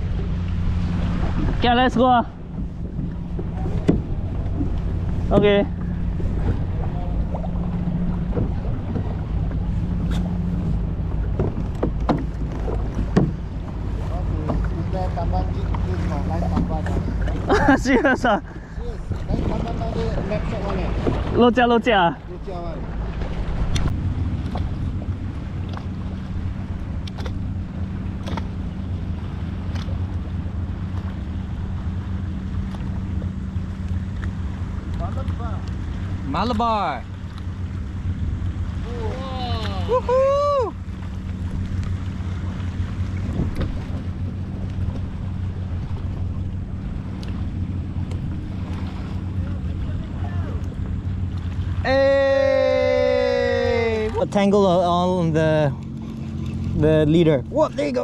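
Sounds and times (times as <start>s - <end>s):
low hum: 0.0s - 58.0s
water around kayak: 0.0s - 58.0s
wind rumble on microphone: 0.0s - 58.0s
light clicks and knocks: 11.2s - 13.8s.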